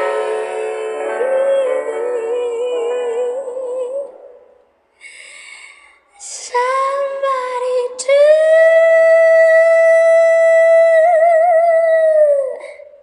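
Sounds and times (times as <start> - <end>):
woman singing long note: 0.0 - 4.2
sustained piano chord: 0.0 - 4.6
faint breathy hiss: 4.2 - 6.6.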